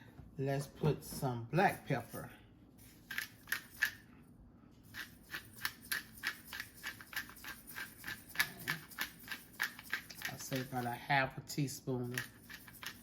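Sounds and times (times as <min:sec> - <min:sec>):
pepper mill grinding: 0:02.8 - 0:04.0, 0:04.9 - 0:11.0, 0:11.9 - 0:13.0.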